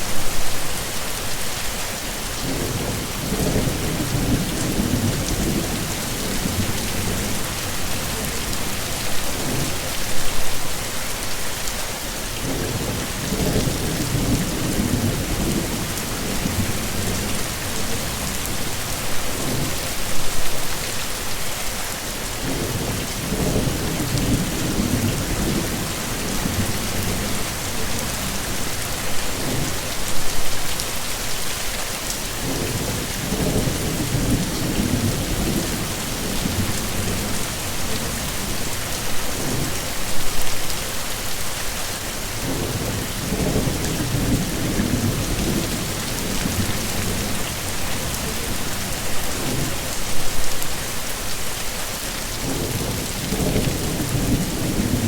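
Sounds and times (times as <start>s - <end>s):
heavy rain: 0.0s - 55.0s
thunder rumbling: 22.4s - 30.4s.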